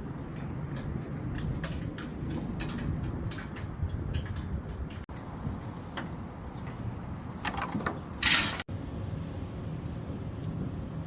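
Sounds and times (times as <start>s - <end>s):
metal clinking and clattering: 5.1s - 8.6s.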